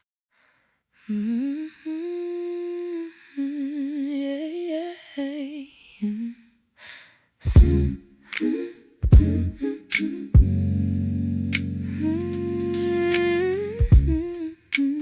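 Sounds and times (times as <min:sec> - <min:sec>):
person humming melody: 0:09.2 - 0:15.0.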